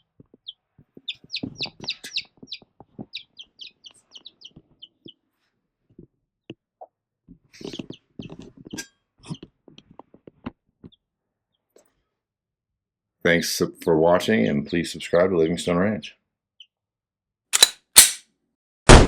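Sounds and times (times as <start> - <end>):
soft scratching and tapping: 0.0 - 3.2, 7.3 - 11.0
baby chicks peeping: 0.0 - 5.2, 7.6 - 9.6.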